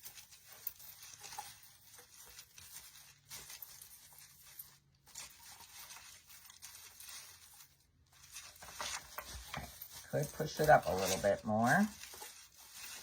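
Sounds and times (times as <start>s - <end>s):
artificial branches rustling: 0.0s - 13.0s.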